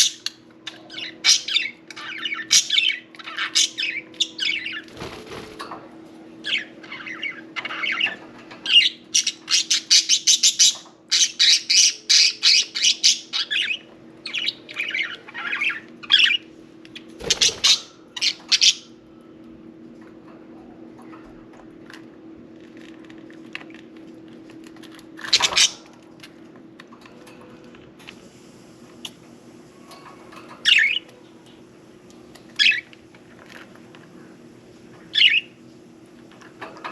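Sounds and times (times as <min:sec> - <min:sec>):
faint steady hum: 0:00.0 - 0:36.9
budgerigars chattering and squawking: 0:17.2 - 0:18.9.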